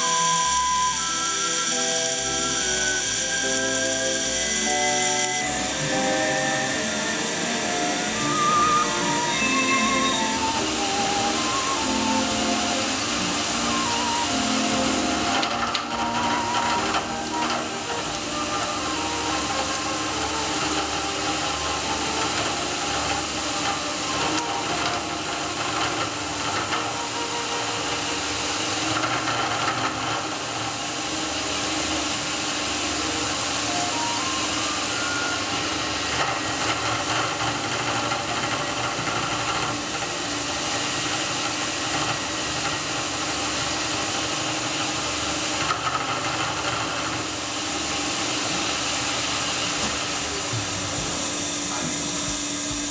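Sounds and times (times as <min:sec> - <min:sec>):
held machine tones: 0:00.0 - 0:31.3, 0:32.6 - 0:43.3
lathe whirring and hissing: 0:00.0 - 0:52.9.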